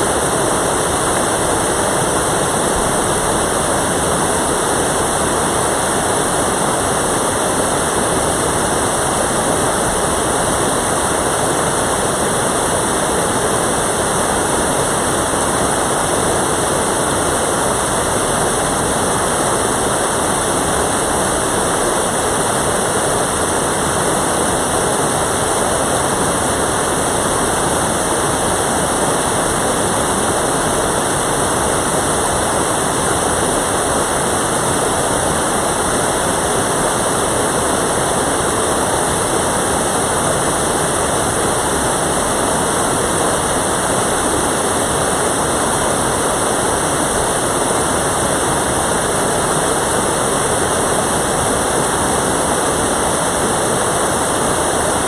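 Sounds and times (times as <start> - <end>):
stream water rushing: 0.0 - 55.0.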